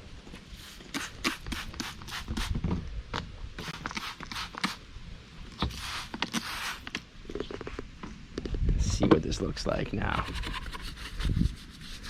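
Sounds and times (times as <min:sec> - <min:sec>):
brush scrubbing soapy surface: 0:05.7 - 0:06.9, 0:10.2 - 0:12.0.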